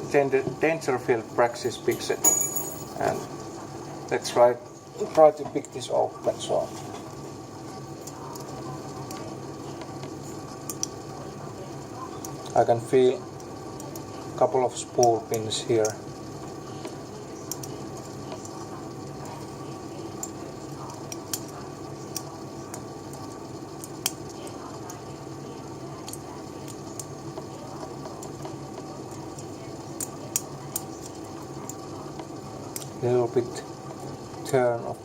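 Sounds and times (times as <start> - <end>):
background hum: 0.8 - 14.4.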